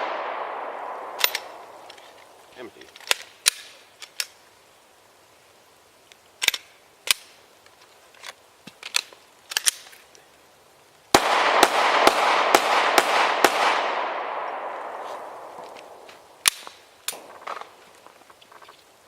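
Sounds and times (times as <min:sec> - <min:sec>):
pistol shots: 0:00.0 - 0:01.7, 0:11.2 - 0:15.7.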